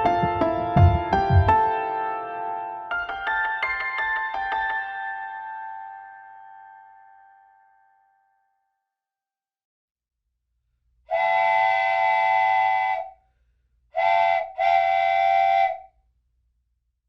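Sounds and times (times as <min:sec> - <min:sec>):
train whistle blasts: 0:11.1 - 0:13.2, 0:14.0 - 0:15.9.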